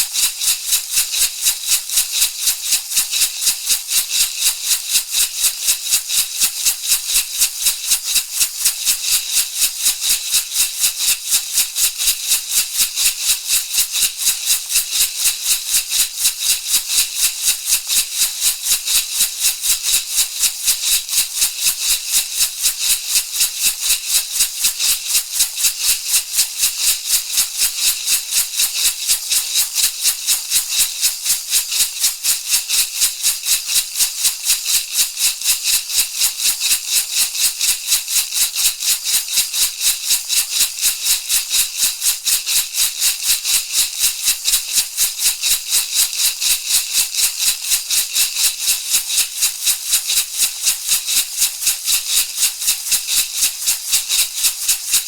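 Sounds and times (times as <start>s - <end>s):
handheld rattle shaken: 0.0s - 55.0s.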